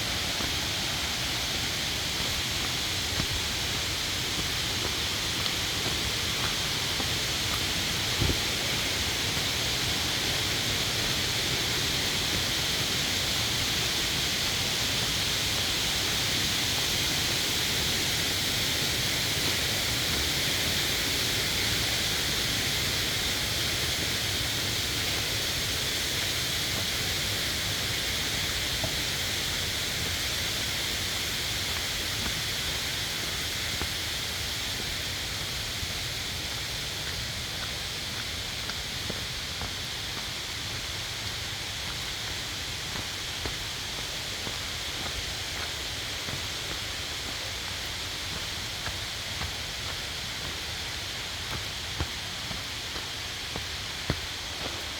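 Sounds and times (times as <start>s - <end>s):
stream rushing over rocks: 0.0s - 54.9s.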